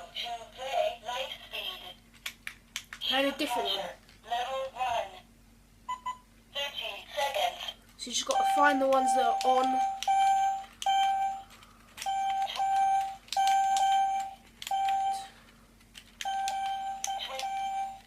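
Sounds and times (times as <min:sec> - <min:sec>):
short electronic beeps: 0:12.1 - 0:15.3.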